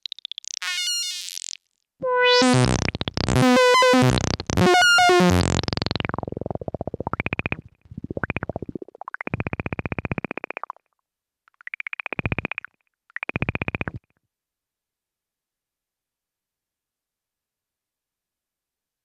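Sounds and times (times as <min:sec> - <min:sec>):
synthesizer notes: 0:00.6 - 0:06.7
fast-pulsing synthesizer tone: 0:02.0 - 0:06.4.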